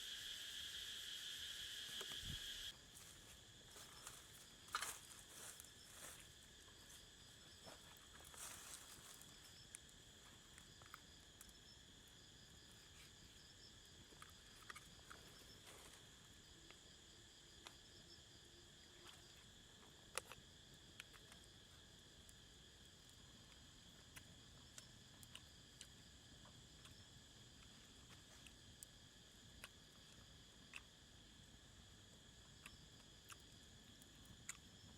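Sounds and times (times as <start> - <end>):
insect chirring: 0.0 - 34.9.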